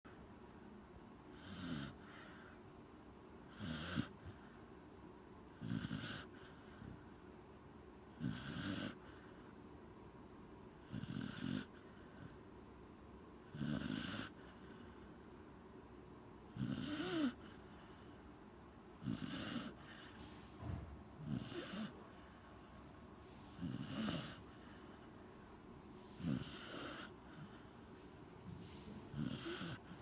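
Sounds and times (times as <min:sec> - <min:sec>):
dog snoring: 0:01.3 - 0:02.6, 0:03.5 - 0:04.6, 0:05.5 - 0:07.1, 0:08.1 - 0:09.5, 0:10.8 - 0:12.4, 0:13.4 - 0:15.1, 0:16.5 - 0:18.3, 0:19.0 - 0:22.7, 0:23.5 - 0:25.3, 0:26.1 - 0:30.0.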